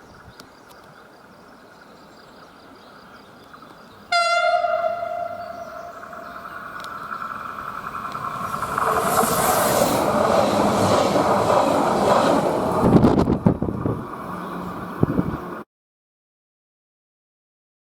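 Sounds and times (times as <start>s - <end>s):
train rolling noise: 3.5s - 15.6s.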